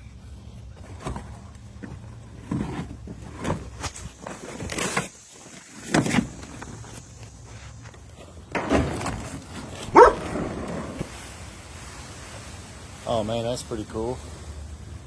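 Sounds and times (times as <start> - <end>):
lumber knocks and scrapes: 0.8 - 11.2.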